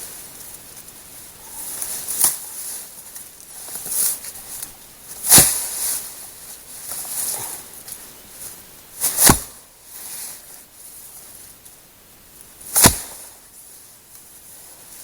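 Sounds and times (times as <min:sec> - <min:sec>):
firewood cracking: 0:12.8 - 0:13.2.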